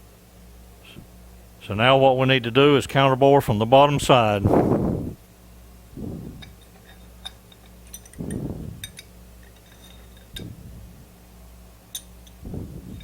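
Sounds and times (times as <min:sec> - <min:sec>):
steady low hum: 0:00.0 - 0:13.0
metal parts clinking: 0:06.4 - 0:10.5.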